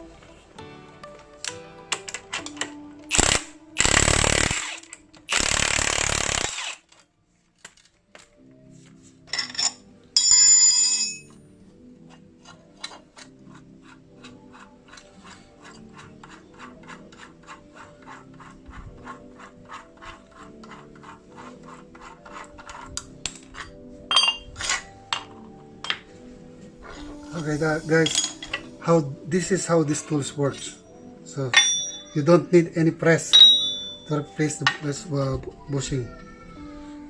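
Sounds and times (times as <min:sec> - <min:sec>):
background music: 0:00.0 - 0:37.0
ratchet wrench clicking: 0:02.1 - 0:07.0
ringing metal clang: 0:09.3 - 0:11.4, 0:24.1 - 0:24.5, 0:31.5 - 0:32.2, 0:33.3 - 0:34.1.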